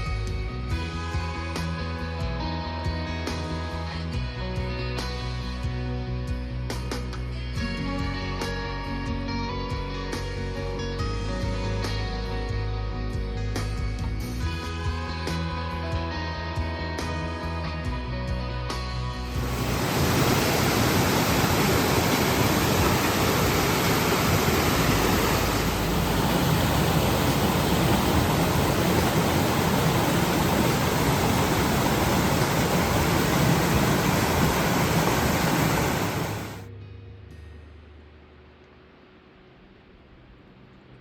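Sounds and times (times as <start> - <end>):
music: 0.0 - 41.0
rush of water: 19.3 - 36.6.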